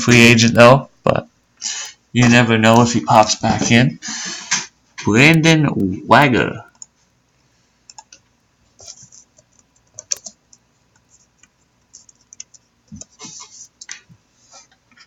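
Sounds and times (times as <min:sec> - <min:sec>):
computer keyboard typing: 0:06.7 - 0:06.9, 0:07.9 - 0:14.0.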